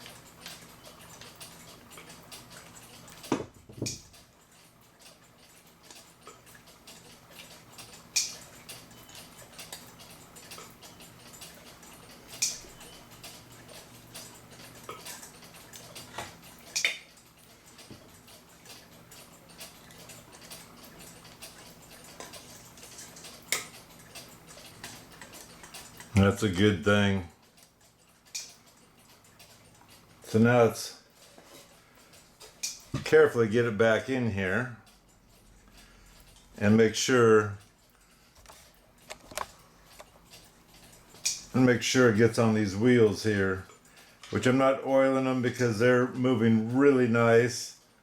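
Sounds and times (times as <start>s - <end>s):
clock parts clicking and tapping: 0.0s - 47.3s.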